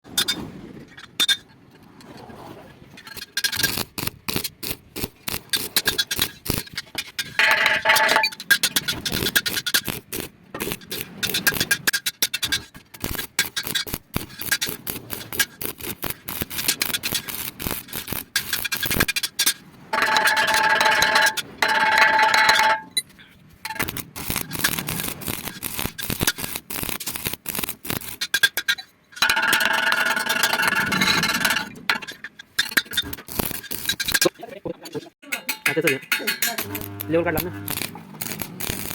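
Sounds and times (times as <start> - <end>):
welding arc crackling: 3.4 - 6.8, 7.4 - 12.1, 13.0 - 19.3, 23.7 - 28.5, 32.9 - 34.3, 36.4 - 38.9
steady buzz: 36.6 - 38.9.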